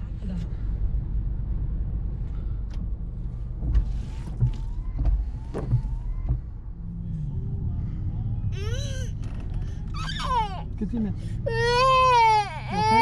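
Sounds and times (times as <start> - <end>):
car engine rumbling: 0.0 - 13.0
knocks: 3.6 - 6.5.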